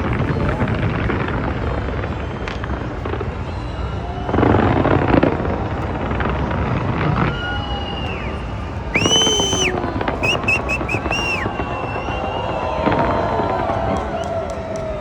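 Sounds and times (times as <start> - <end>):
firework whistling: 6.0 - 14.9
fireworks booming and cracking: 8.9 - 15.0.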